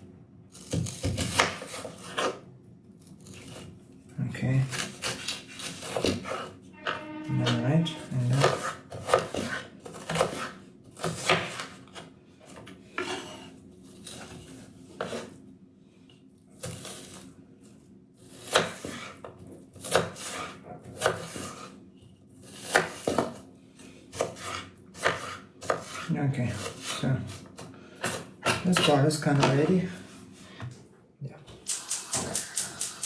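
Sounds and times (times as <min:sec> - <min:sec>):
knife chopping on cutting board: 0:00.6 - 0:02.4, 0:08.3 - 0:11.8, 0:18.4 - 0:21.7, 0:22.5 - 0:23.4, 0:24.1 - 0:27.0.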